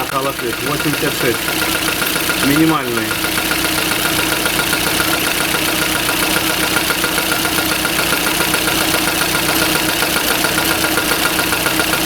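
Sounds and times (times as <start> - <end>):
car engine idling: 0.0 - 12.0
fast light engine tapping: 0.0 - 12.0.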